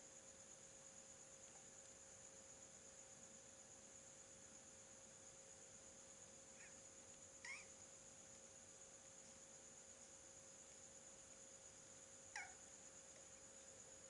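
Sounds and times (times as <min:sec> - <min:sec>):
faint high whine: 0:00.0 - 0:14.0
small animal squeaky call: 0:07.4 - 0:07.7, 0:12.3 - 0:12.6.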